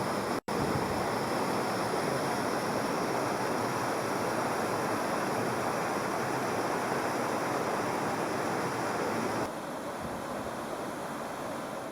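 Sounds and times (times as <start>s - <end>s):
waterfall rushing: 1.2s - 9.5s.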